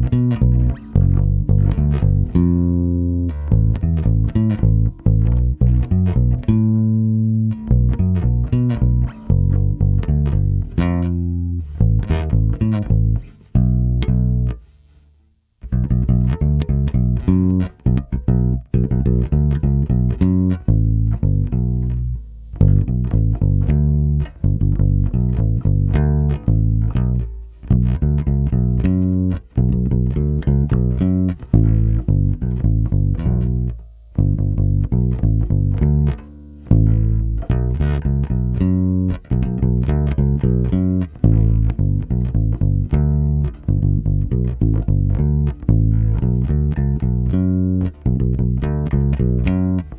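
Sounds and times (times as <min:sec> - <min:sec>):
electric bass plucked notes: 0:00.0 - 0:49.9.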